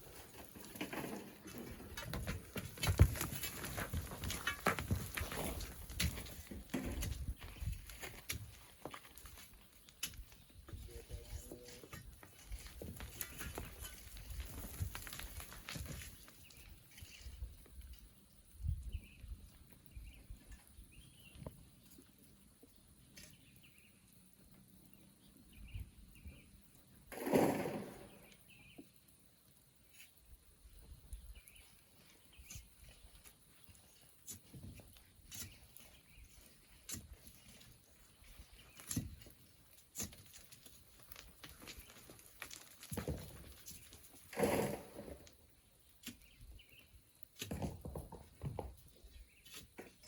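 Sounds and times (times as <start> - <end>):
falling sand and stones: 27.1 - 28.5, 38.4 - 46.4.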